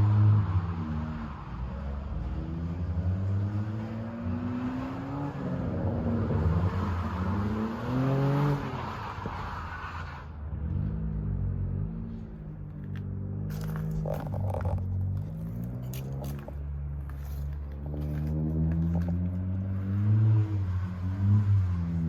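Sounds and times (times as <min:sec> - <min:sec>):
car engine revving: 0:10.5 - 0:22.0.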